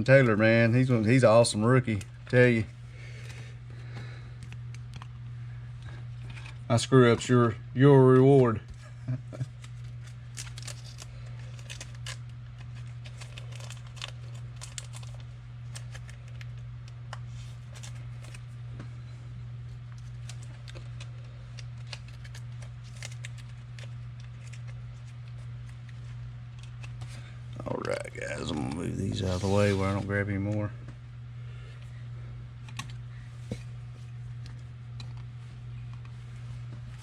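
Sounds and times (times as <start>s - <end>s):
low electrical hum: 0.0s - 37.0s
cards clicking and rustling: 9.3s - 18.5s, 19.8s - 30.7s.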